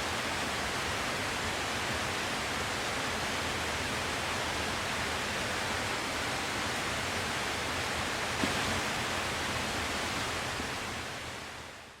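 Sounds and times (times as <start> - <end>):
stream flowing over rocks: 0.0 - 12.0.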